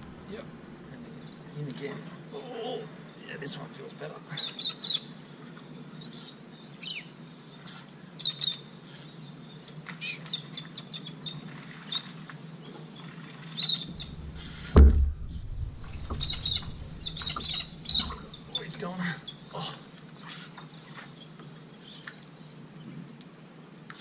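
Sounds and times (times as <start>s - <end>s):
faint steady hum: 0.0s - 24.0s
small birds chirping: 3.0s - 14.7s, 15.4s - 23.0s
loud thump: 13.9s - 18.5s.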